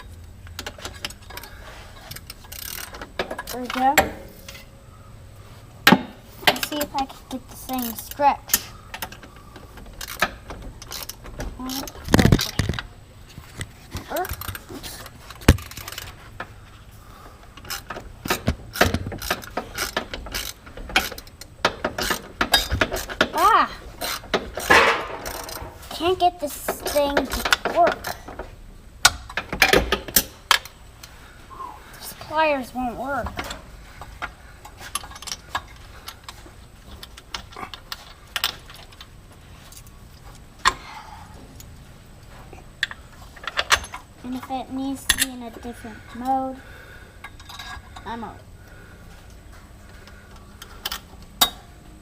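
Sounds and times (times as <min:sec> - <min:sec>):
metal tools clanking on exhaust spring: 0:00.0 - 0:04.7, 0:05.9 - 0:12.8, 0:17.6 - 0:30.8, 0:33.2 - 0:39.9, 0:42.3 - 0:48.3, 0:49.5 - 0:51.8
metal tools clinking: 0:17.6 - 0:25.8, 0:42.8 - 0:46.6, 0:47.2 - 0:48.2
metal clank: 0:24.0 - 0:25.8.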